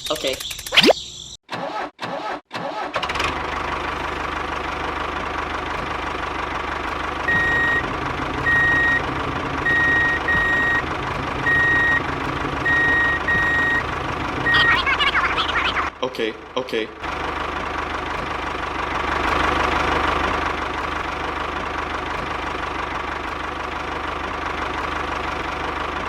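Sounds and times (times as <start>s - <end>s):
vehicle engine running: 3.0s - 26.0s
reversing alarm beeps: 7.3s - 7.8s, 9.7s - 10.8s, 11.5s - 12.0s, 12.7s - 13.8s, 14.5s - 14.7s.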